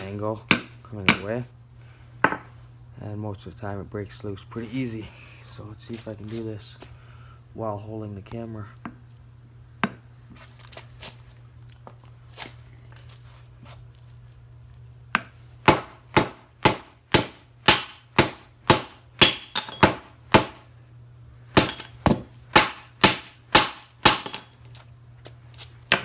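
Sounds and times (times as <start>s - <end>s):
hammer striking steel: 15.7s - 20.6s, 21.6s - 24.5s.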